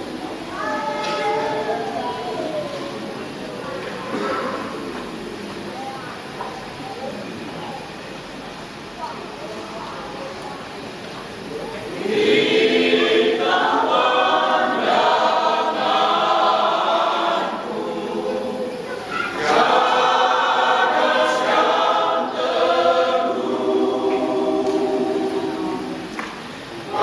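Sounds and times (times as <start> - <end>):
choir singing: 11.9 - 27.0.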